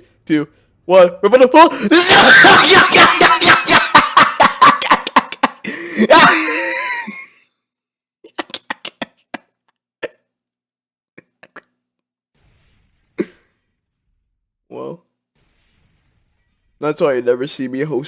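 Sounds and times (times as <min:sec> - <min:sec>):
man laughing or coughing: 0:01.8 - 0:07.3.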